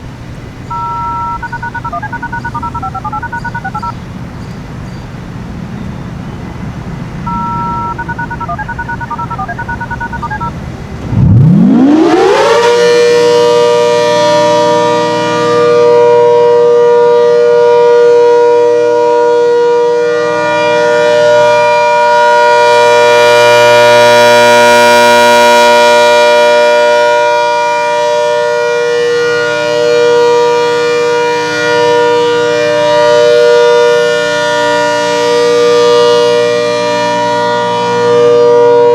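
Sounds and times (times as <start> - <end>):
warning siren winding up: 0.7 - 3.9, 7.3 - 10.5
alternating beeping tones: 0.7 - 4.0, 7.3 - 10.6.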